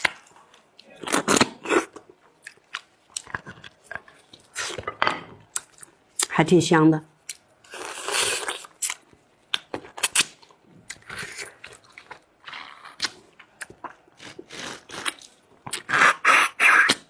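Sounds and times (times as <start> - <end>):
chewing and sucking: 10.9 - 17.0.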